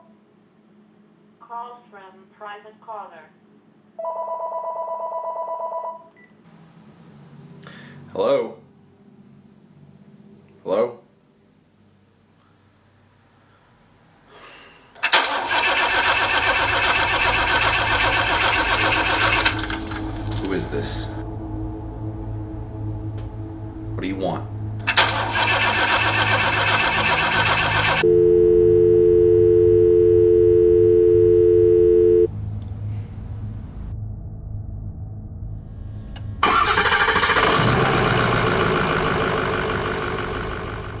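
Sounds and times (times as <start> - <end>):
diesel engine starting and running: 6.5 - 8.3, 15.0 - 41.0.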